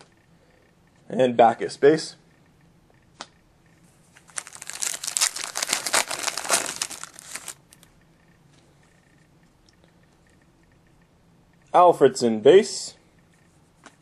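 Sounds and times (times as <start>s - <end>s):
wrapper crackling: 4.2s - 7.8s.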